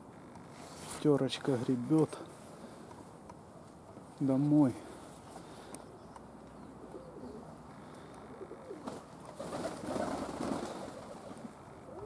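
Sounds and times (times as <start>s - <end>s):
rustling noise: 0.5s - 1.6s
pigeons cooing: 5.4s - 12.0s.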